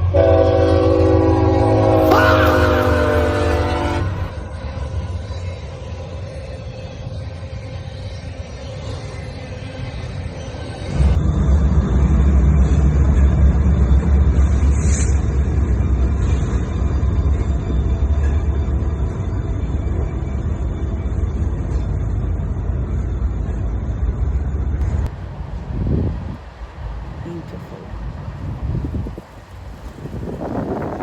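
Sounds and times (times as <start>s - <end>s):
freight train rumbling by: 0.0s - 31.0s.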